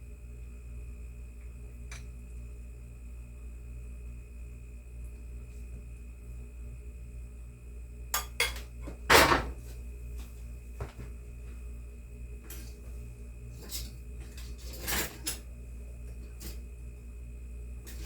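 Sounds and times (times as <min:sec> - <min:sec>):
low steady hum: 0:00.0 - 0:18.0
utensils clinking against dishes: 0:08.2 - 0:09.4, 0:13.6 - 0:15.4.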